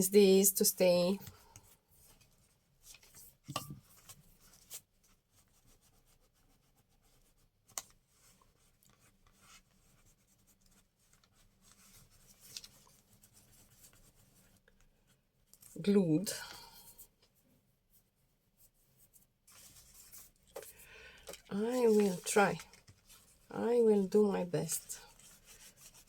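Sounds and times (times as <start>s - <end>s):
paper rubbing and rustling: 8.0s - 14.6s, 18.6s - 23.5s, 24.7s - 26.0s.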